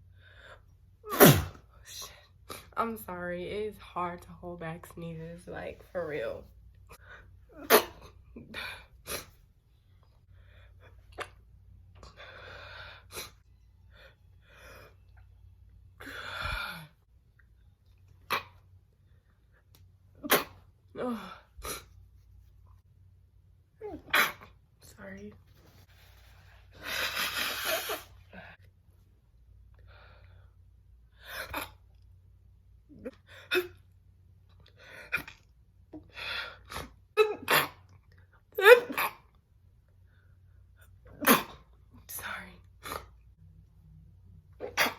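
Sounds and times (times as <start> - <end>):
woman stifling sneezes: 1.0 - 2.1, 7.6 - 9.3, 20.2 - 21.9, 23.8 - 24.5, 41.1 - 41.6, 44.6 - 44.9.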